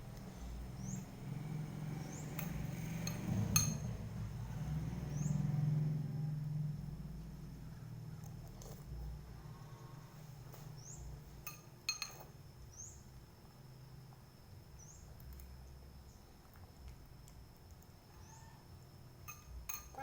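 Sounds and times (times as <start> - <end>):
faint rising chirps: 0.3 - 4.0
cutlery clinking on bowl: 2.4 - 3.9, 11.4 - 12.4, 19.2 - 20.0.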